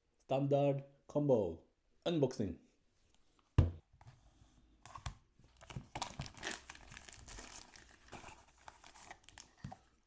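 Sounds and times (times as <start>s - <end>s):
packaging rustling and crinkling: 5.5s - 10.0s
packaging tearing: 5.6s - 9.7s.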